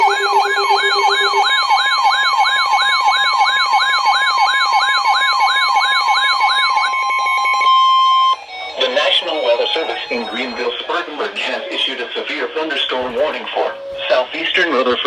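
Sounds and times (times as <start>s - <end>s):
low electronic tone: 0.0s - 1.6s
electronic siren sweeping: 0.0s - 14.3s.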